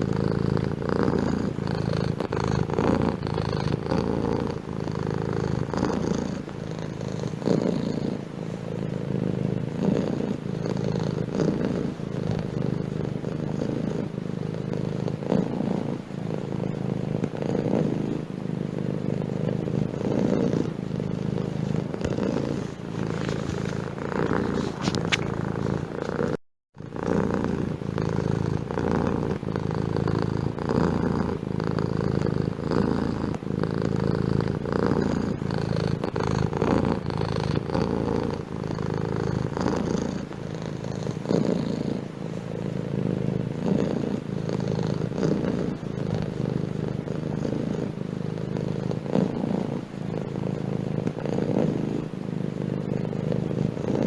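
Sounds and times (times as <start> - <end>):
cat purring: 0.0 - 54.0.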